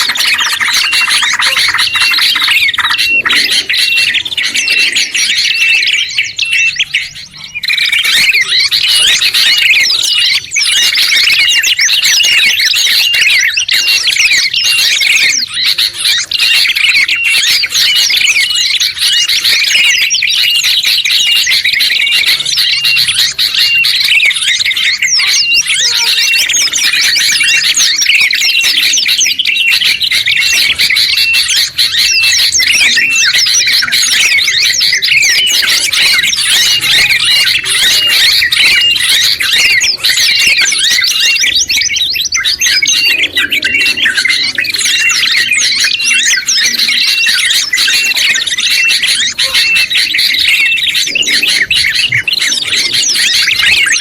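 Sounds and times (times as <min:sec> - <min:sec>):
songbirds chattering: 0:00.0 - 0:54.0.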